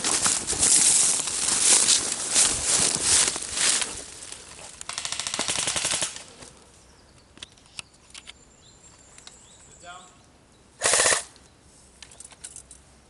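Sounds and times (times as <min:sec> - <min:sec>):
airsoft gun full-auto burst: 0:04.9 - 0:06.2, 0:10.8 - 0:11.3.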